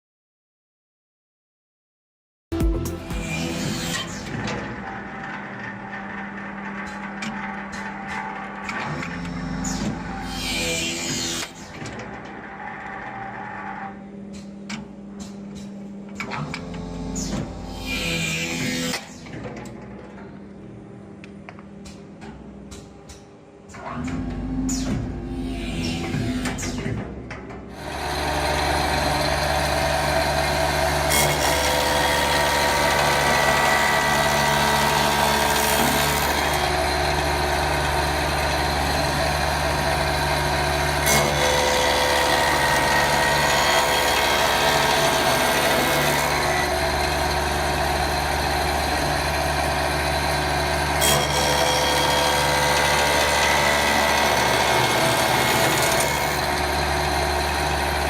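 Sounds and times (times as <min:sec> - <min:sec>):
woodworking machine humming: 0:27.7 - 0:58.0.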